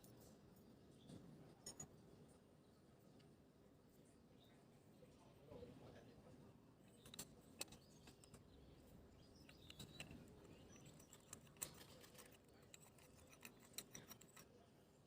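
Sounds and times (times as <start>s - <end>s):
light clicks of small metal parts: 6.8s - 14.8s.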